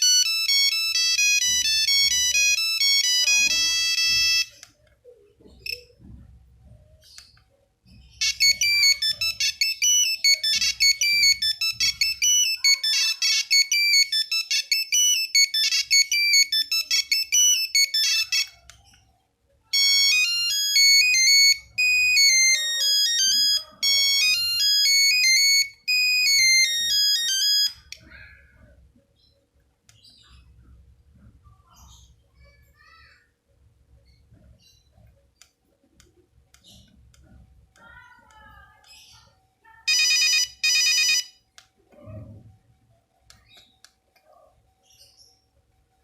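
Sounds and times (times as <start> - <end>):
electronic beeping ringtone: 0.0 - 4.8, 5.4 - 6.0, 8.0 - 18.9, 19.7 - 28.2, 39.9 - 41.4.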